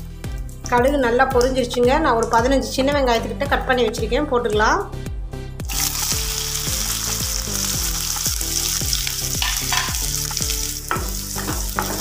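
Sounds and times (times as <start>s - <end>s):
mustard seeds popping: 5.7s - 12.0s
onions sizzling in hot oil: 5.7s - 12.0s.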